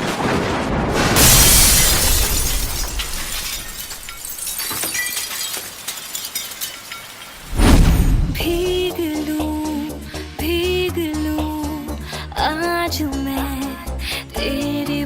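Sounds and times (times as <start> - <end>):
loud crash of noise: 0.0 - 4.5, 7.4 - 8.9.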